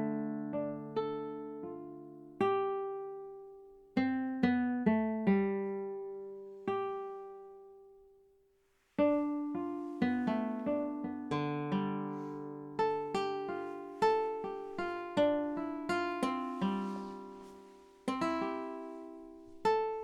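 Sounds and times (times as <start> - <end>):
plucked acoustic string instrument: 0.0 - 8.0, 8.8 - 20.0.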